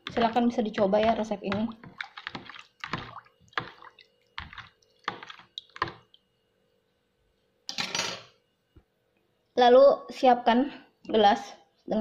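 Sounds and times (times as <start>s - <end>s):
spoon stirring wet mixture in bowl: 0.0s - 6.3s.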